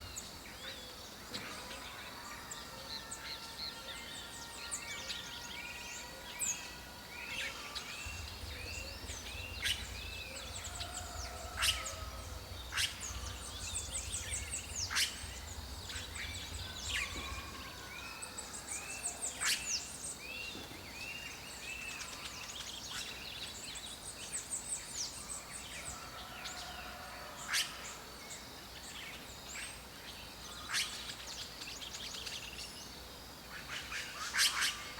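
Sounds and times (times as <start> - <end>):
birds calling in chorus: 0.0 - 28.1
loud sharp bird calls: 1.8 - 20.7.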